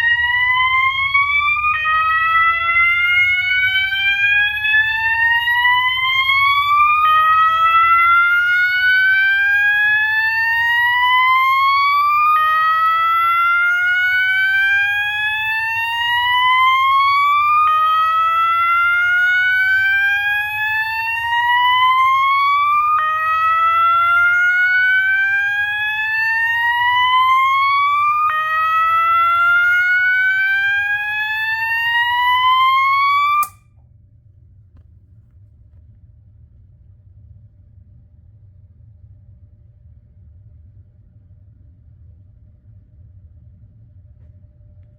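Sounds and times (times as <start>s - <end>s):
fire alarm slow whoop: 0.0s - 33.6s.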